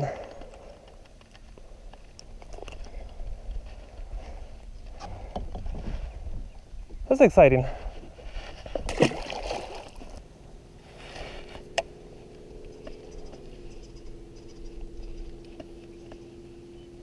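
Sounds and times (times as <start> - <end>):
low motor hum: 7.9 - 17.0.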